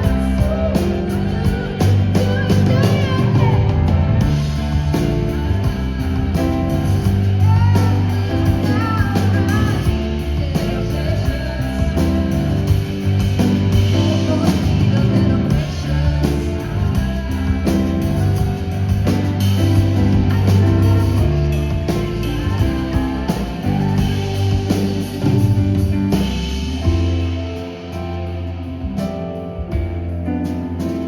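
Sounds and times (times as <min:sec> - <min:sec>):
person singing: 0:00.0 - 0:28.2
bass notes: 0:00.0 - 0:31.0
guitar: 0:00.0 - 0:31.0.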